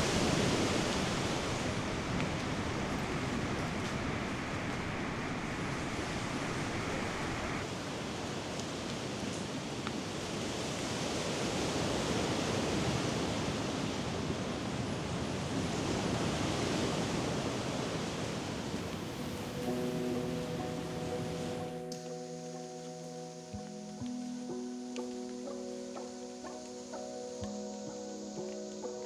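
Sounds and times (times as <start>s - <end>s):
water rushing: 0.0s - 8.2s, 15.1s - 29.0s.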